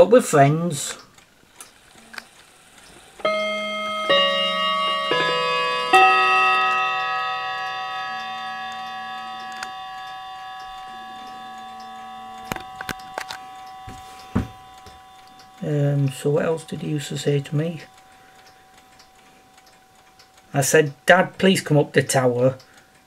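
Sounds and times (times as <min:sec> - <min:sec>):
clock chime notes: 0:03.2 - 0:22.7.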